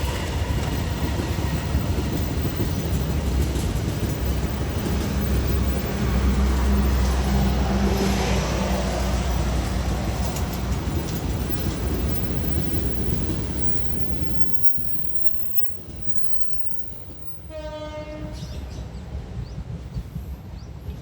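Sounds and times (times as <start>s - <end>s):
train cars rumbling: 0.0s - 21.0s
train horn: 17.5s - 18.7s.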